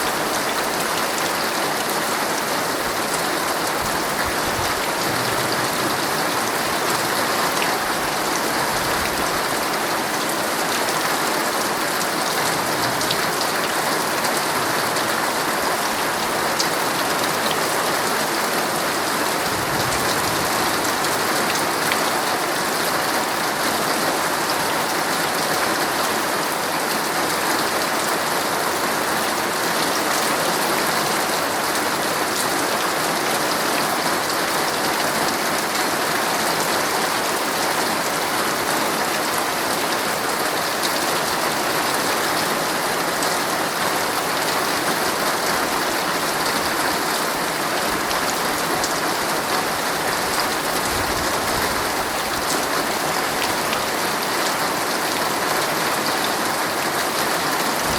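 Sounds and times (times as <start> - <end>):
heavy rain on a tent: 0.0 - 57.9.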